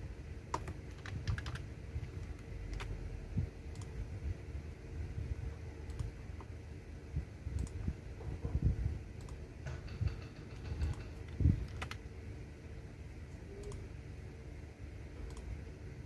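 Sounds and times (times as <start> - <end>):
computer keyboard keystrokes: 0.5 - 3.0, 5.8 - 6.5, 7.5 - 7.8, 9.2 - 12.1.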